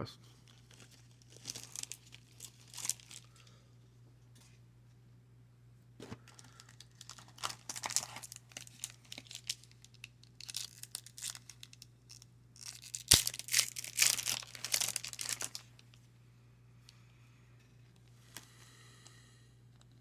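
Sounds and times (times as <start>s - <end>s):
card pack wrapper crinkling: 0.5s - 3.4s, 6.0s - 15.9s.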